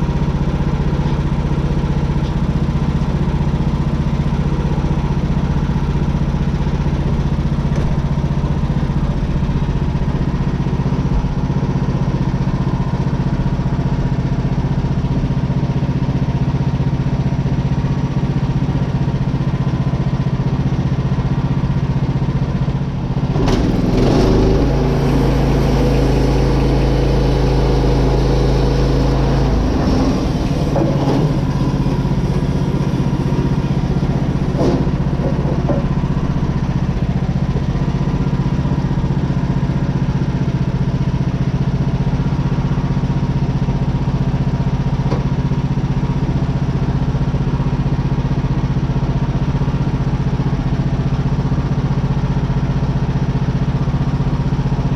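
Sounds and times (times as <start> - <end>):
gasoline engine running: 0.0 - 54.9
loud rough sawing sound: 23.2 - 36.3.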